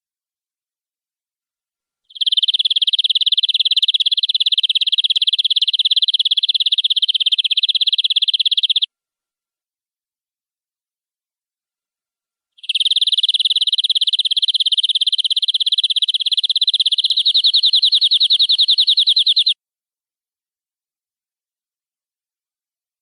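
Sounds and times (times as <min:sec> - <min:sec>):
canary trilling: 0:02.1 - 0:08.9, 0:12.6 - 0:19.6.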